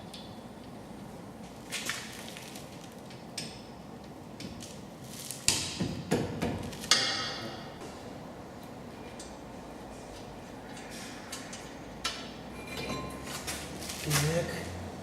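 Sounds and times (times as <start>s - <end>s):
ringing metal clanks: 12.6s - 13.3s.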